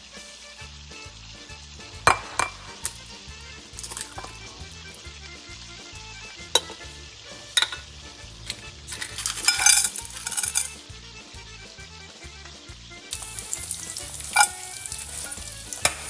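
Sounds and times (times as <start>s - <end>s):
loud hissing sizzle burst: 0.0s - 9.0s, 13.1s - 16.0s
background music with steady beat: 0.0s - 11.8s
sharp clinks: 1.8s - 5.0s, 6.5s - 10.8s, 13.1s - 16.0s.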